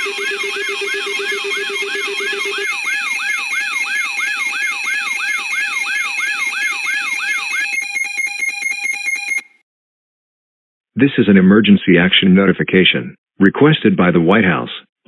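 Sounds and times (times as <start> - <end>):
steady high tones: 0.0 - 9.4
fast pulsing beep: 0.0 - 9.5
yelping siren: 0.0 - 9.6.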